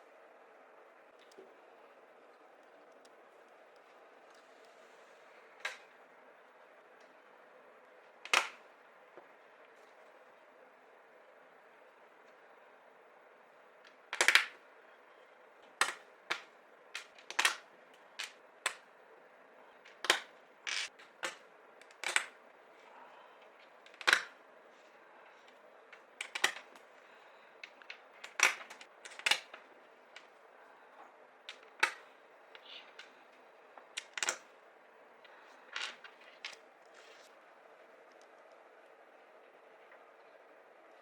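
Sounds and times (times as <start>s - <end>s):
plastic parts clicking together: 8.3s - 8.6s, 13.9s - 14.6s, 15.6s - 17.6s, 18.2s - 18.9s, 19.8s - 22.4s, 23.6s - 24.4s, 25.5s - 26.9s, 27.6s - 30.3s, 31.5s - 33.2s, 33.8s - 34.5s.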